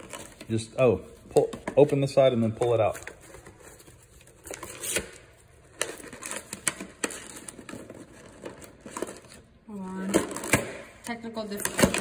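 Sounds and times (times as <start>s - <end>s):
cardboard rustling: 0.0s - 9.4s.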